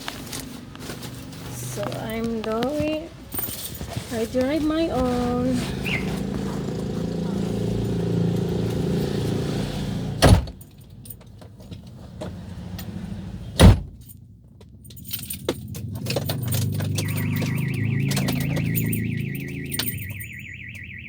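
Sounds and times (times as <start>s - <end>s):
car engine humming: 0.1s - 21.0s
keys jingling: 1.0s - 9.6s, 10.5s - 13.1s, 13.8s - 20.8s
car alarm wavering tone: 4.7s - 9.4s, 15.2s - 21.0s
loud thump: 10.2s - 10.6s.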